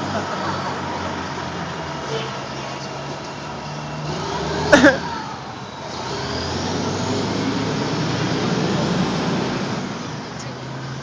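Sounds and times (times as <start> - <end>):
road traffic: 0.0 - 11.0
vehicle passing: 0.0 - 11.0.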